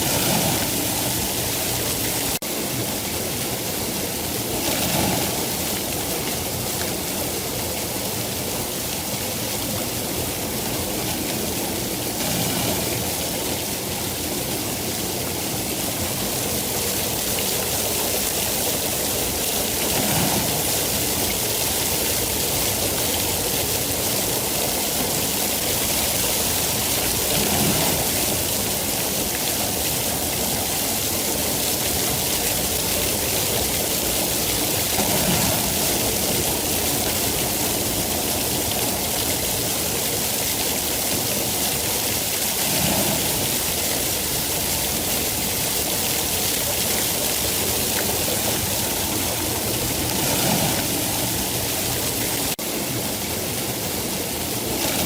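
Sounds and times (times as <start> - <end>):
heavy rainfall: 0.0 - 55.0.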